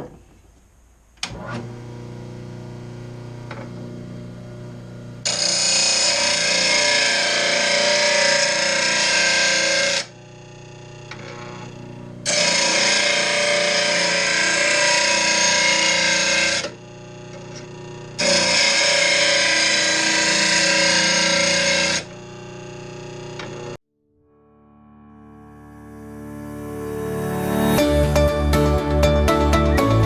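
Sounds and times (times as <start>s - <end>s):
grinding wheel running: 2.0s - 23.8s
grinder grinding a steel blade: 3.2s - 10.2s, 11.0s - 23.8s.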